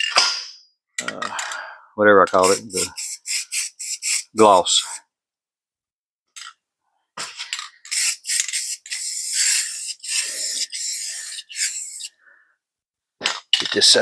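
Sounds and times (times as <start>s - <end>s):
aerosol spray can hissing: 2.4s - 5.0s, 7.9s - 12.1s.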